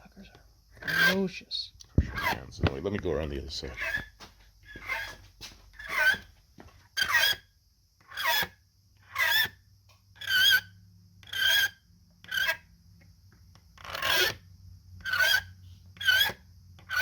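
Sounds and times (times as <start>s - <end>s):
metal contacts being scraped: 0.8s - 1.4s.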